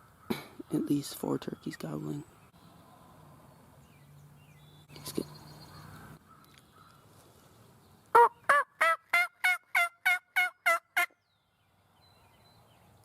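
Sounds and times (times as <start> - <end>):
turkey yelps: 8.2 - 11.2.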